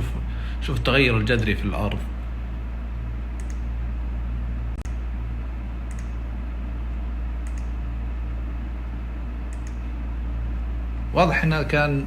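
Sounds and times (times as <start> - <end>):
low room hum: 0.0 - 12.0
computer mouse clicks: 3.4 - 3.7, 5.8 - 6.2, 7.4 - 7.8, 9.5 - 9.8.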